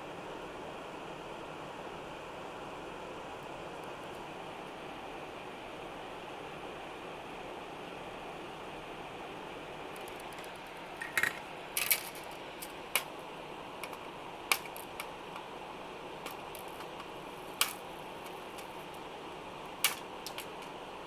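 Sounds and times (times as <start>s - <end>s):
background hiss: 0.0s - 21.0s
small hand tools clicking and snipping: 13.8s - 15.4s, 16.2s - 19.0s, 19.8s - 20.7s.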